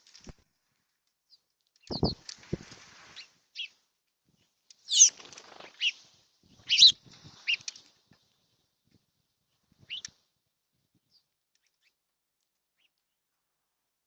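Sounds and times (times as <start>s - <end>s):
birds chirping: 1.8s - 2.2s, 4.9s - 5.2s, 5.8s - 7.9s, 9.9s - 10.1s
wing flutter: 1.8s - 3.4s, 4.8s - 8.1s.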